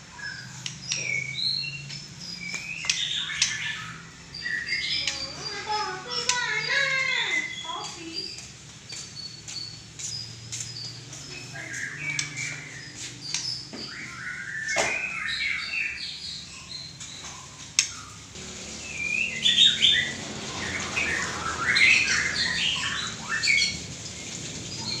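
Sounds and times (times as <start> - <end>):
bird singing whistled phrases: 0.2 - 8.4, 11.3 - 17.2, 18.8 - 23.9.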